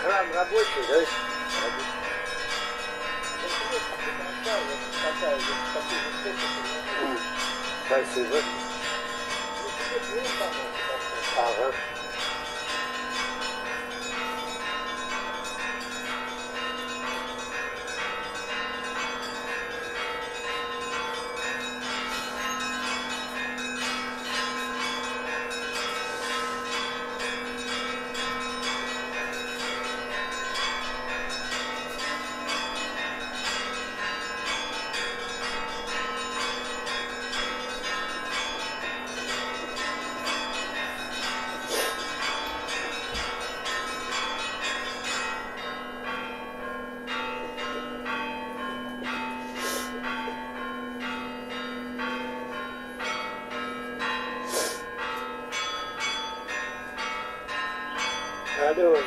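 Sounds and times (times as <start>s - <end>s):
church bells pealing: 0.0s - 59.0s.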